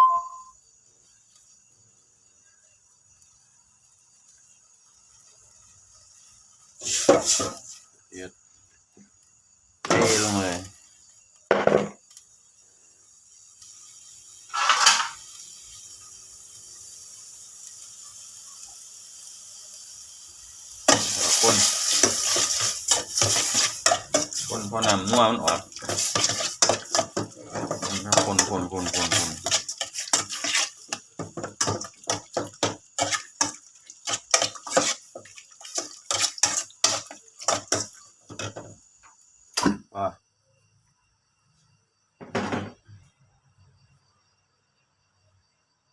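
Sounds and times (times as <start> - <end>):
faint steady hiss: 0.0 - 45.9
food clattering into cooking pot: 14.5 - 15.2, 20.9 - 38.8
spoon scraping against bowl: 14.5 - 15.2, 20.9 - 37.9.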